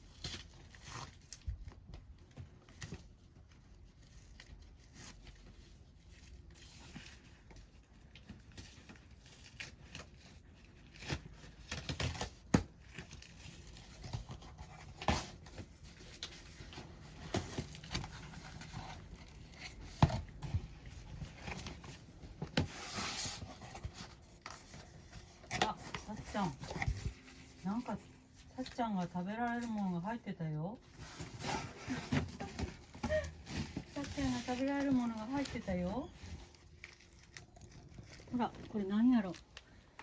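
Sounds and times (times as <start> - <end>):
packing material tearing and crinkling: 31.2 - 40.0.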